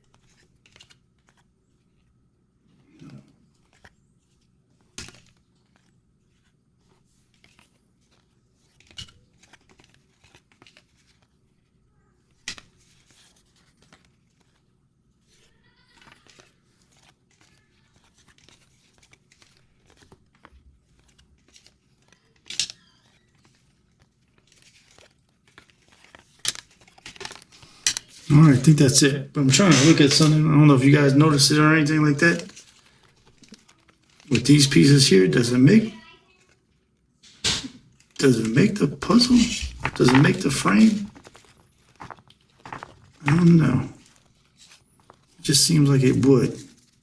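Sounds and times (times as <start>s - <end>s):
packaging rustling and crinkling: 12.3s - 31.3s, 31.9s - 34.3s, 37.4s - 45.4s
cards tapping: 24.6s - 36.0s, 37.3s - 46.7s.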